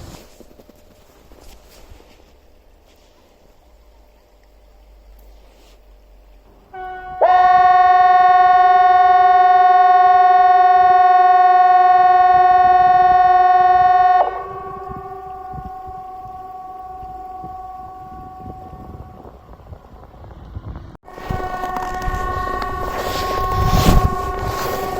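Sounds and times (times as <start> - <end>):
faint steady tone: 0.2 - 9.3, 14.2 - 19.8
warning siren: 6.7 - 20.1, 21.1 - 24.9.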